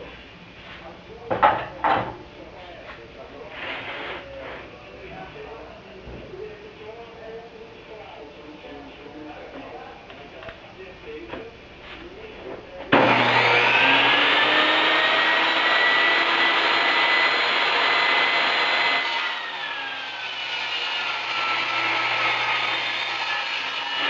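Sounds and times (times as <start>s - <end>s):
power tool motor whine: 13.0s - 24.0s.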